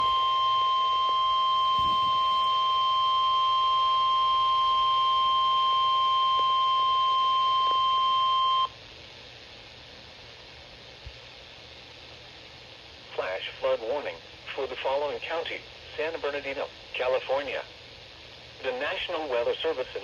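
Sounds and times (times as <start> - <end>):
radio static hiss: 0.0 - 3.2, 6.2 - 20.0
steady warning alarm tone: 0.0 - 8.7.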